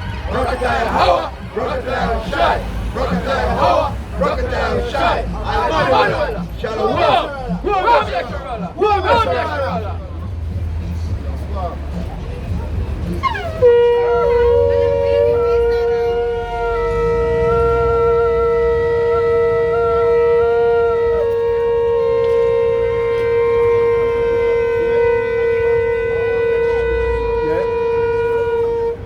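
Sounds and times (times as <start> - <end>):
shofar long blast: 13.3 - 29.0.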